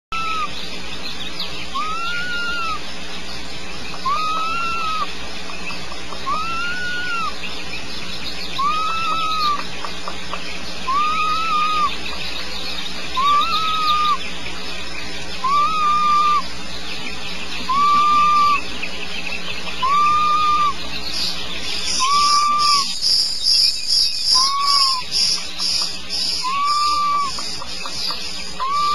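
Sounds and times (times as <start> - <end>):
rapid high-pitched chirping: 15.4 - 28.9.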